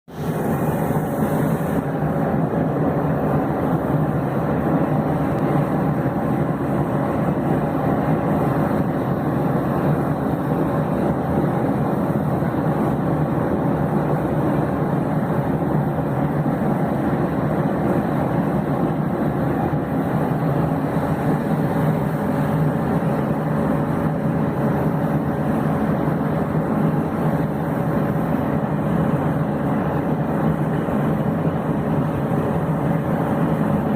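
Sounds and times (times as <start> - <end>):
machine hum and rumble: 0.1 - 33.9.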